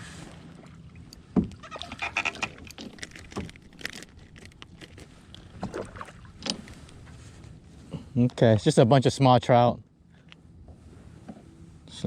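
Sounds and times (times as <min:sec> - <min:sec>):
water splashes: 0:00.0 - 0:06.4.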